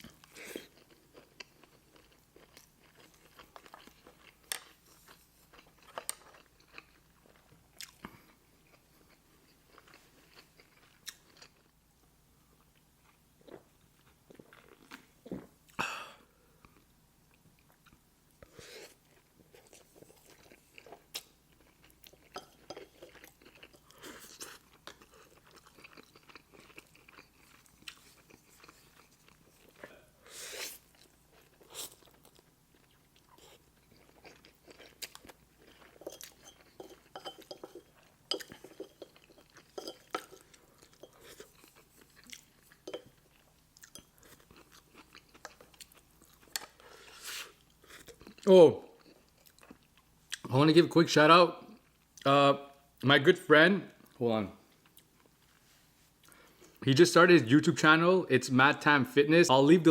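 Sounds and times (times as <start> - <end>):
food crunching: 0.0 - 11.7, 19.0 - 30.0, 30.7 - 50.5
person chewing food: 0.0 - 11.8, 12.6 - 15.8, 16.5 - 50.5, 54.0 - 56.8.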